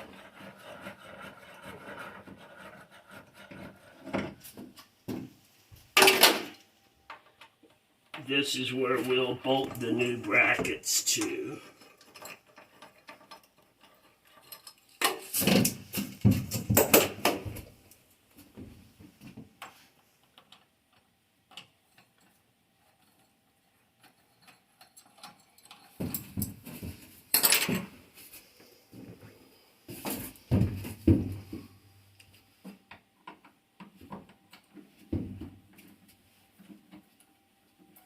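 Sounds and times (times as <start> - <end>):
metal parts and tools clanking: 6.0 - 7.6, 11.2 - 17.3, 21.9 - 26.6, 27.3 - 27.9.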